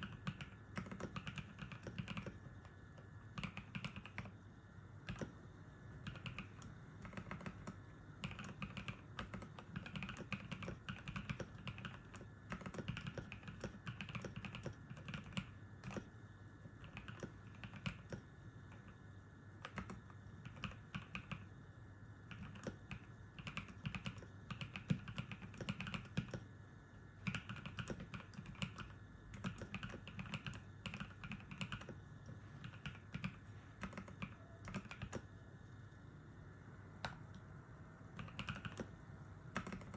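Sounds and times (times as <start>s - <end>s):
mechanical keyboard typing: 0.0s - 4.4s, 5.0s - 5.4s, 6.0s - 16.1s, 16.7s - 19.0s, 19.6s - 21.5s, 22.2s - 26.5s, 27.2s - 32.0s, 32.6s - 35.3s, 38.1s - 39.9s.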